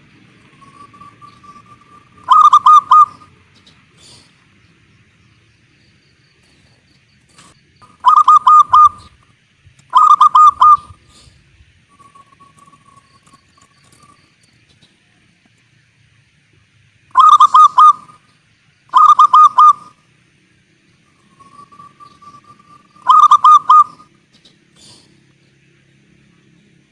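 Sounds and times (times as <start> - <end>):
dove cooing: 0.0 - 4.3, 7.8 - 9.2, 9.9 - 11.3, 17.1 - 18.2, 18.9 - 20.0, 21.3 - 24.1.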